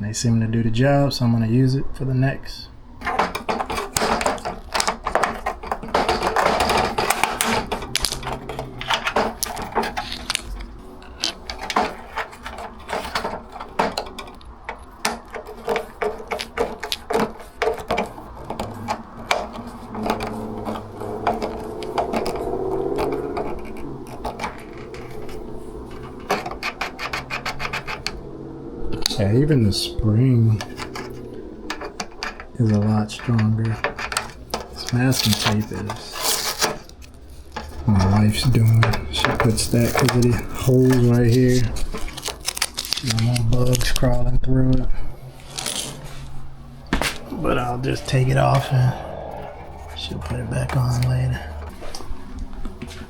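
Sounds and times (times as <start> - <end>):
clicks knocks and rattles on metal frame: 3.0 - 22.4.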